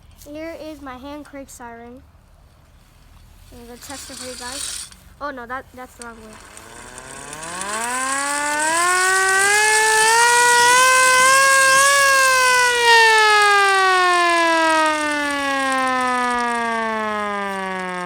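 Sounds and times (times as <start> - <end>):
hand-crank siren wailing: 5.9 - 18.0.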